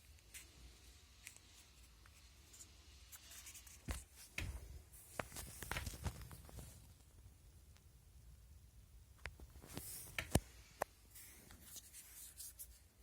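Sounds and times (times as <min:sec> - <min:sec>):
rustling: 0:00.0 - 0:07.1.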